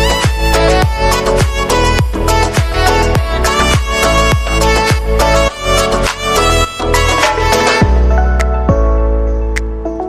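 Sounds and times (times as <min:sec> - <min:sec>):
deep bass hits: 0:00.0 - 0:05.5.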